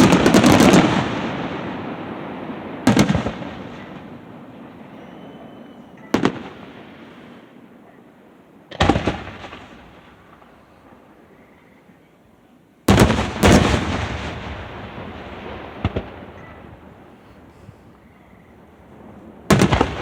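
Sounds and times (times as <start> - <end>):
fireworks bursting with bangs: 0.0 - 7.8, 8.6 - 11.2, 12.9 - 20.0
rolling echo: 12.9 - 20.0.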